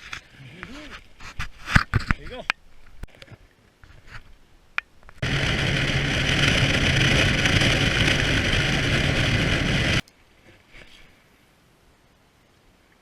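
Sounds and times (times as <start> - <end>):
wind noise: 5.0 - 10.0
motorboat engine rushing: 5.2 - 10.0.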